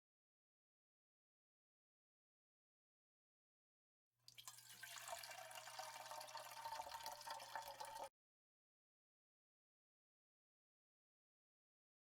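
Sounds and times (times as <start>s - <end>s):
liquid pouring: 4.3s - 8.1s.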